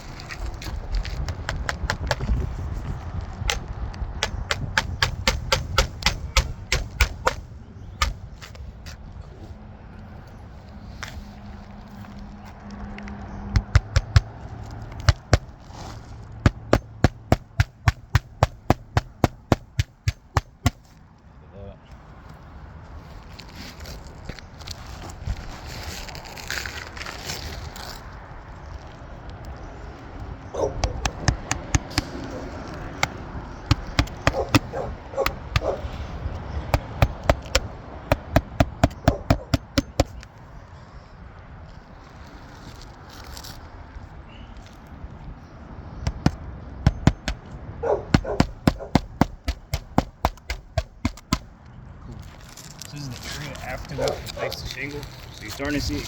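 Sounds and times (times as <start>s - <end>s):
hammer striking on roof: 1.3s - 2.4s, 3.5s - 8.3s, 13.6s - 14.4s, 15.0s - 15.5s, 16.4s - 20.9s, 30.8s - 36.0s, 36.7s - 40.2s, 46.1s - 47.5s, 48.1s - 51.5s.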